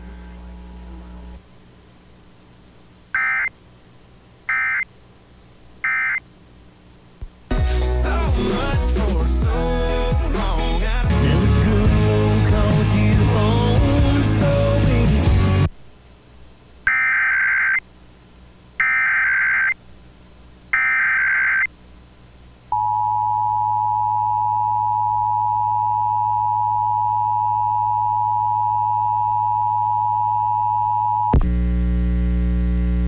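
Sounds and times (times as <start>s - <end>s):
mains hum: 0.0s - 10.0s, 10.8s - 33.0s
warbling data tone bursts: 3.2s - 3.5s, 4.5s - 4.8s, 16.9s - 17.8s, 18.8s - 19.8s, 20.8s - 21.7s.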